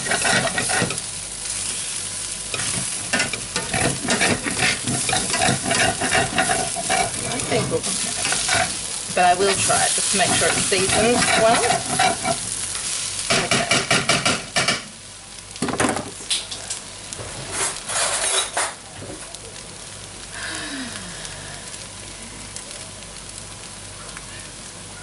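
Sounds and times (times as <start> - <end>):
utensil scraping a pan: 0.0 - 1.0, 2.5 - 12.4, 17.4 - 18.8
food sizzling in a frying pan: 0.0 - 25.0.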